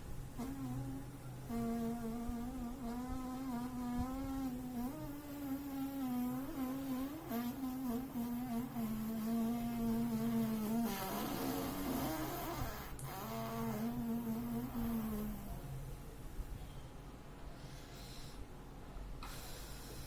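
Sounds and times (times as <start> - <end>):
person humming a steady note: 0.4 - 15.5
noisy breath in: 16.7 - 20.0.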